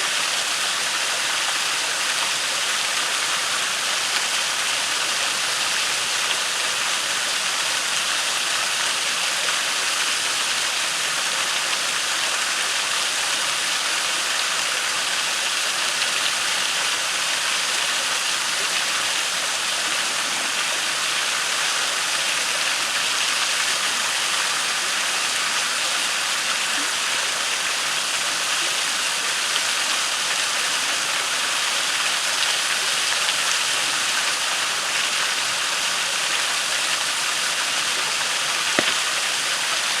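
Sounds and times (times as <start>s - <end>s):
waterfall rushing into pool: 0.0s - 40.0s.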